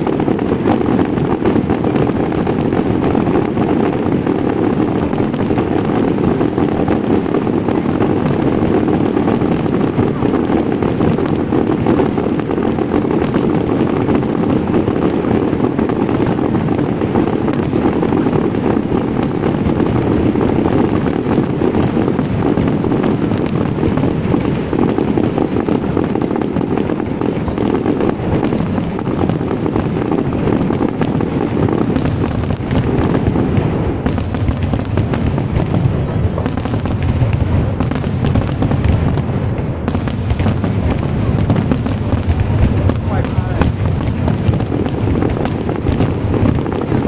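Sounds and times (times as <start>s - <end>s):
fireworks bursts and crackle: 0.0s - 47.0s.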